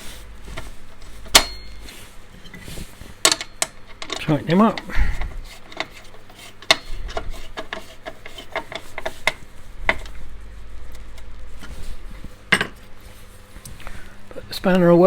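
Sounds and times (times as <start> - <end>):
spanner clicking and scraping on screw: 0.0 - 10.2.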